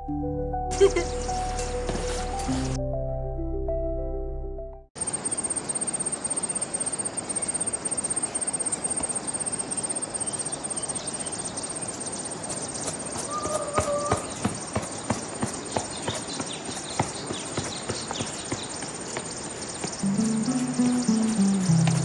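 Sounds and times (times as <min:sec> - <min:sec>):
background music: 0:00.0 - 0:04.9, 0:20.0 - 0:22.0
high-pitched cricket chirping: 0:05.0 - 0:15.0, 0:18.2 - 0:22.0
outdoor background hiss: 0:05.0 - 0:22.0.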